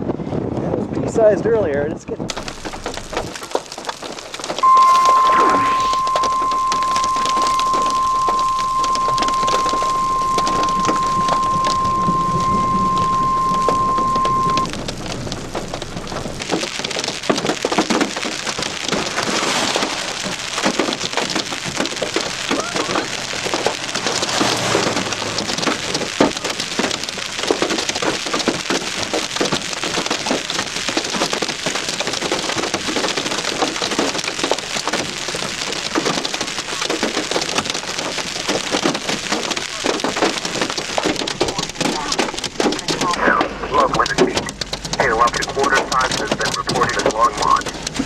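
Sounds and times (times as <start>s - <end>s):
hail pelting a car: 2.3s - 48.0s
steady beep tone: 4.6s - 14.7s.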